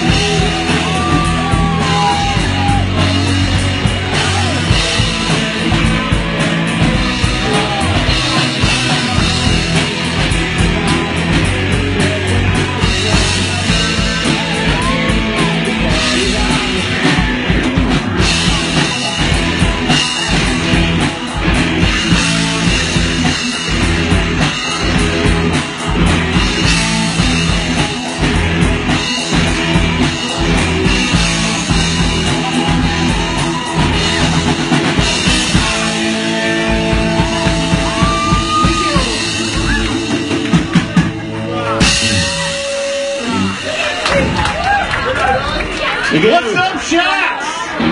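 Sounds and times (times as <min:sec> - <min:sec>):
loud rock music: 0:00.0 - 0:47.9.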